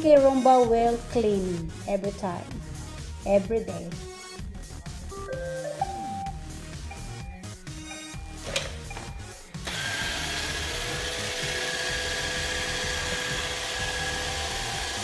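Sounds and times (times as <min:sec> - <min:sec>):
robot vacuum motor whining: 0:08.4 - 0:15.0.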